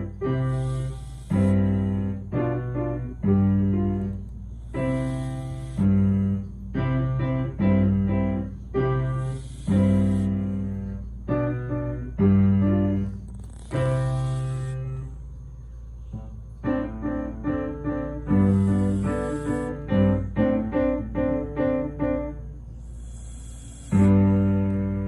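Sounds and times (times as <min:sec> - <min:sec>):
person snoring softly: 0:00.0 - 0:02.5, 0:04.0 - 0:06.8, 0:08.8 - 0:11.0, 0:13.0 - 0:15.2, 0:18.1 - 0:20.2, 0:22.7 - 0:25.0
slow piano music: 0:00.0 - 0:22.8, 0:23.9 - 0:25.0.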